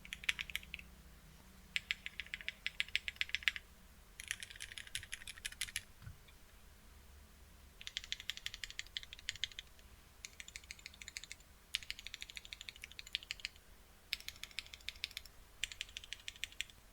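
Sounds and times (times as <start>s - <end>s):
mechanical keyboard typing: 0.0s - 0.8s, 1.8s - 3.6s, 4.2s - 5.9s, 7.8s - 16.8s.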